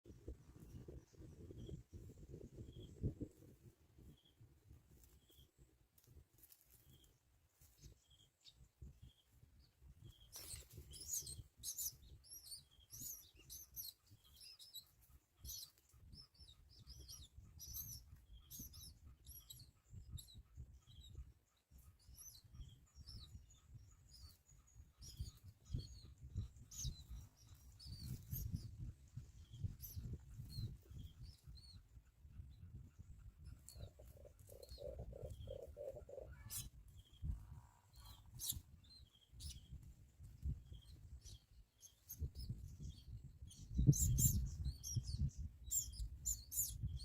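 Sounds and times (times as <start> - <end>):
small birds chirping: 0.1 - 47.0.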